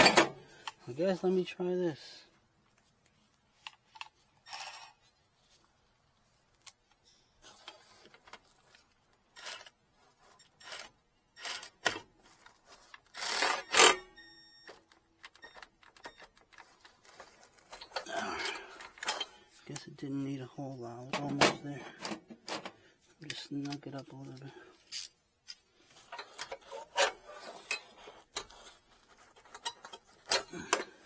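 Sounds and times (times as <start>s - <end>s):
metal clatter: 0.0s - 0.4s
metal tool clicks and scrapes: 24.8s - 30.9s.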